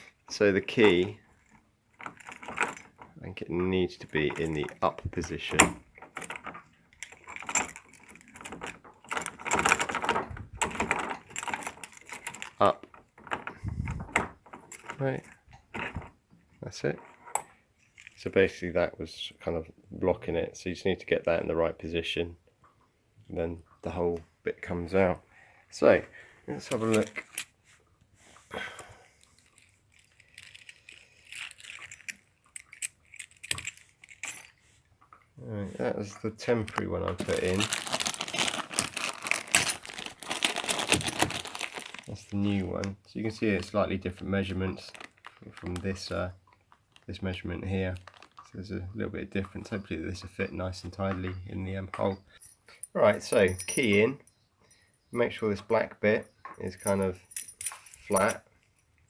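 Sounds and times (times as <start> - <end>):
door lock and key clicking: 2.0 - 3.1, 4.3 - 15.0, 30.2 - 34.5
light metallic clinks: 28.8 - 34.6, 49.5 - 59.0.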